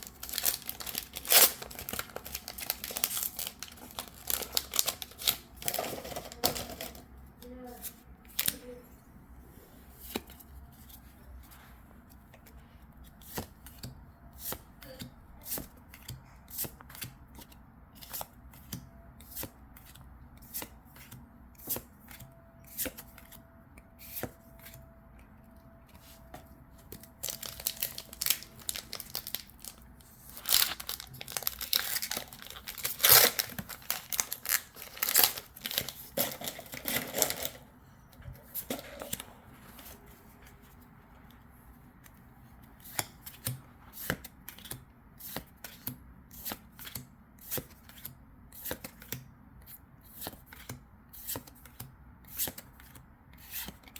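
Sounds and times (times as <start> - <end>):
foil wrapper crinkling and tearing: 0.0 - 7.0, 27.2 - 37.6.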